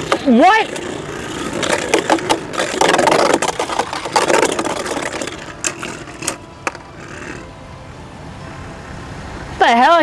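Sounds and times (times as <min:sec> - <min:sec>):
spinning tops scraping together: 0:00.0 - 0:07.4.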